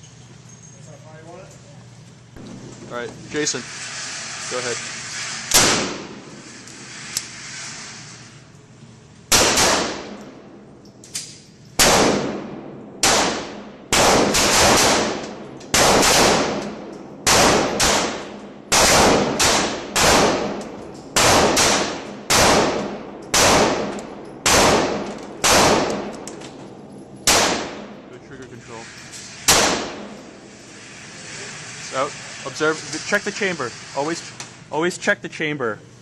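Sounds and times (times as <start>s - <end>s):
pistol shots: 5.5s - 6.2s, 9.3s - 10.2s, 11.8s - 26.3s, 27.2s - 28.0s, 29.5s - 30.2s.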